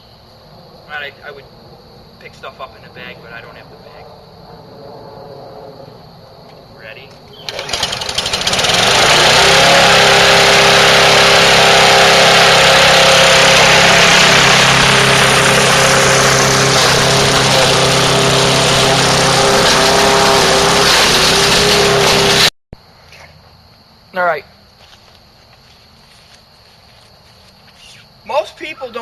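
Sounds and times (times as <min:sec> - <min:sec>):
lawnmower engine starting and running: 0:07.1 - 0:22.5.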